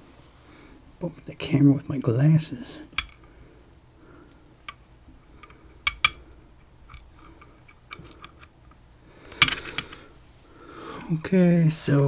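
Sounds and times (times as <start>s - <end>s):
small metal clicks of lock parts: 3.0s - 3.3s, 5.4s - 6.2s, 6.8s - 8.5s, 9.3s - 10.0s.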